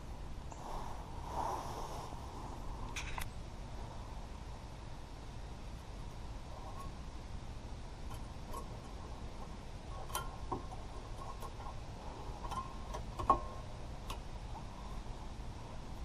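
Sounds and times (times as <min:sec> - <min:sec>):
steady low hum: 0:00.0 - 0:16.0
metallic clicks of brake parts: 0:08.0 - 0:09.0, 0:10.0 - 0:11.8, 0:12.4 - 0:14.7.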